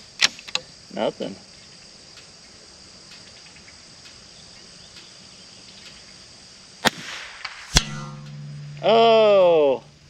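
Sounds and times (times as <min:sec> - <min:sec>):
crickets chirring: 0:00.0 - 0:10.0
rifle shots: 0:06.8 - 0:08.9.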